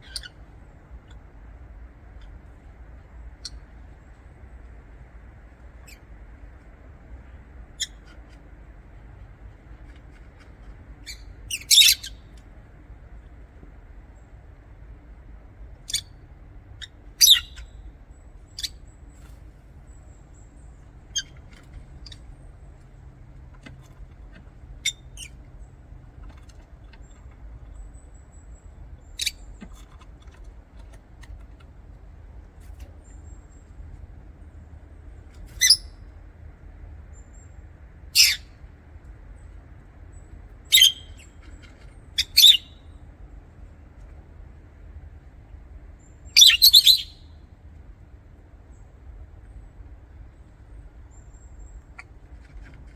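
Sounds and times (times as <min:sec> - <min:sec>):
lovebirds chirping: 0:00.0 - 0:01.3, 0:10.9 - 0:12.4, 0:15.8 - 0:16.1, 0:16.7 - 0:22.9, 0:24.6 - 0:30.4, 0:35.0 - 0:36.0, 0:37.1 - 0:38.5, 0:40.1 - 0:43.0, 0:46.0 - 0:47.3
faint low hum: 0:00.0 - 0:52.9.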